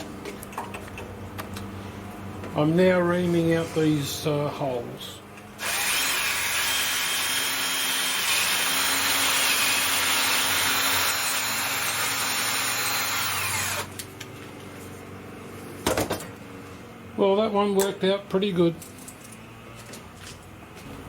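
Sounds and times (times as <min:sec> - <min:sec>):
power drill turning reamer in metal: 0:05.6 - 0:13.9.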